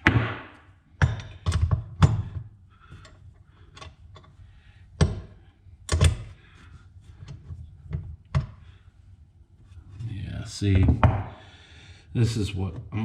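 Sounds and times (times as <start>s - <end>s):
wrench clicking and knocking on metal: 1.0s - 4.4s, 5.0s - 6.3s.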